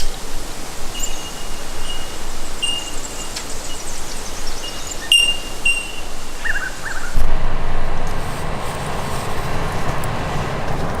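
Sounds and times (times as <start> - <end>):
faint high twittering: 0.0 - 7.2
bird whistling high notes: 0.8 - 7.2.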